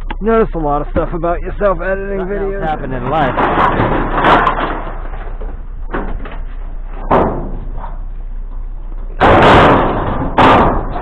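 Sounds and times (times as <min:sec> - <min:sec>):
sharp knocks and thumps: 0:02.6 - 0:08.0, 0:09.0 - 0:11.0.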